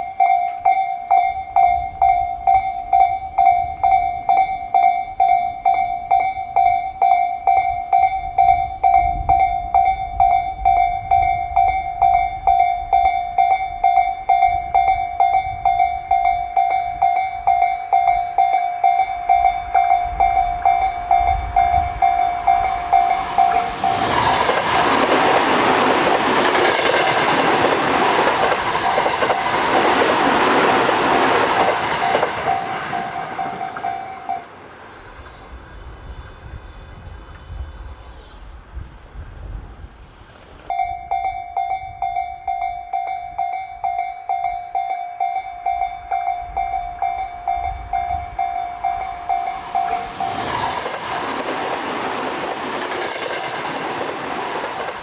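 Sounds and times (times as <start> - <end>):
level crossing bell ringing: 0.0 - 25.1, 26.5 - 34.6, 40.7 - 50.9
train passing: 0.0 - 55.0.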